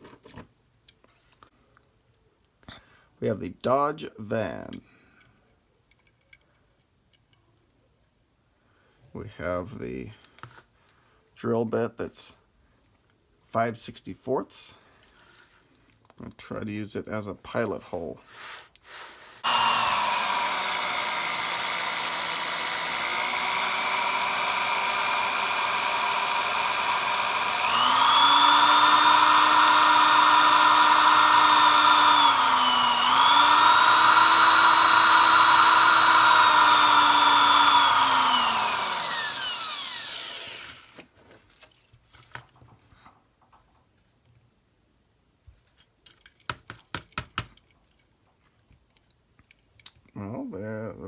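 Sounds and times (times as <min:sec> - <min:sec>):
electric drill motor whining: 0:19.4 - 0:40.9.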